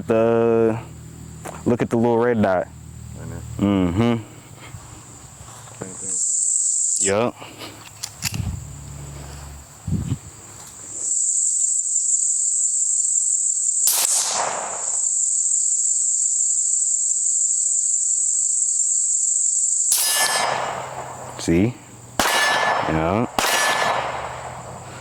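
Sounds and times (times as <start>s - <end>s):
crickets trilling: 0.0s - 25.0s
sharp crack: 13.9s - 15.2s, 19.9s - 25.0s.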